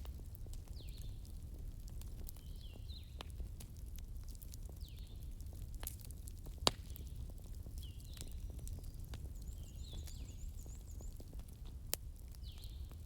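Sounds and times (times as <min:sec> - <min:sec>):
bonfire crackling: 0:00.0 - 0:13.0
bird chirping: 0:08.0 - 0:11.2.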